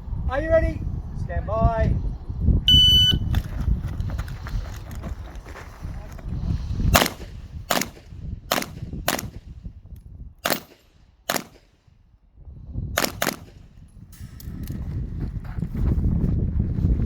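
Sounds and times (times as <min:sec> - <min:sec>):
handgun shots: 0:07.0 - 0:09.4, 0:10.4 - 0:11.8, 0:13.0 - 0:13.6.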